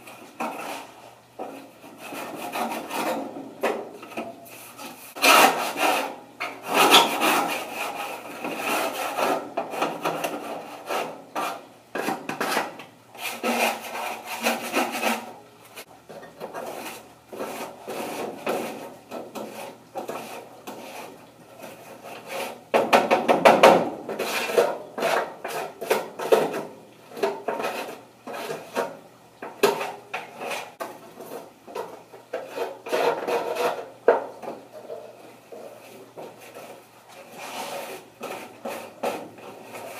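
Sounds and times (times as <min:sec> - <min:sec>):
scraper scraping grime off grill: 0:29.7 - 0:34.0, 0:35.1 - 0:39.9.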